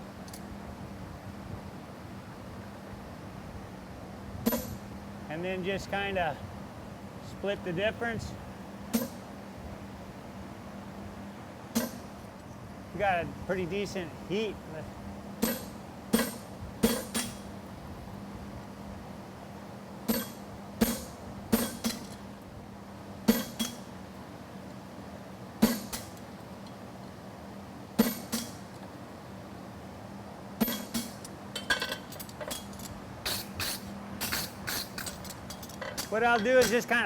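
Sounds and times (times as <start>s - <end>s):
hammer striking steel on anvil: 15.4s - 17.4s, 20.1s - 22.2s, 23.3s - 23.9s, 36.0s - 36.9s.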